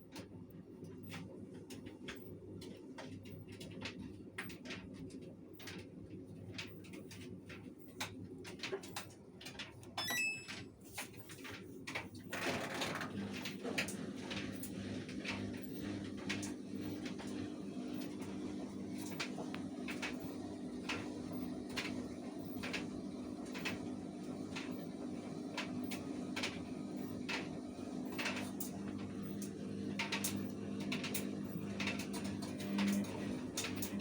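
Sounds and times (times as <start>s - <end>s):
washing machine motor hum: 0.0s - 34.0s.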